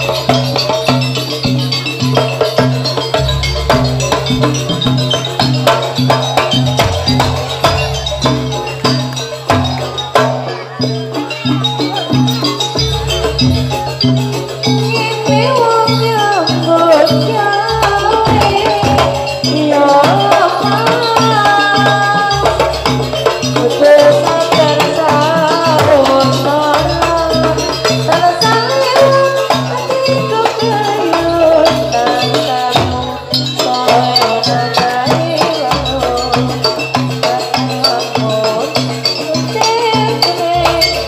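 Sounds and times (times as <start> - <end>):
percussion steady beat: 0.0 - 41.0
wavering gliding melodic lead: 1.6 - 20.7
deep low drum stroke: 3.1 - 5.7, 6.5 - 9.7.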